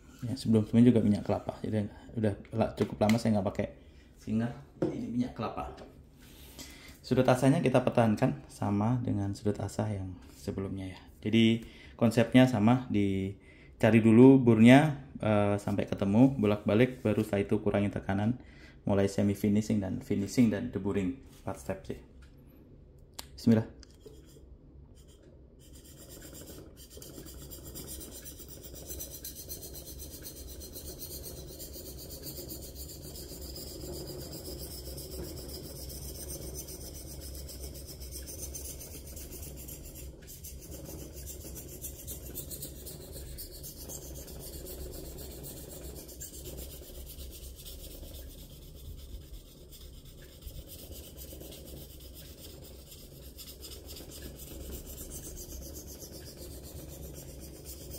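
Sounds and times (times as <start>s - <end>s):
knife rasping on whetstone: 24.0s - 57.9s.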